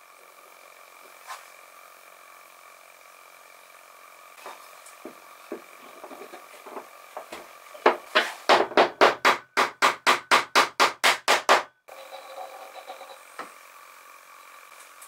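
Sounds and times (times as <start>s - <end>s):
hammer striking wood: 7.2s - 11.7s.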